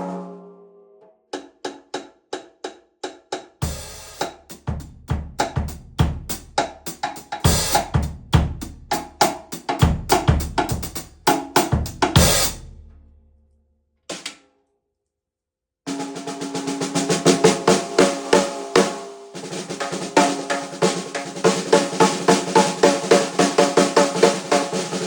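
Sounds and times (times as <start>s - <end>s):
drum kit groove: 1.4s - 12.8s, 15.9s - 25.0s.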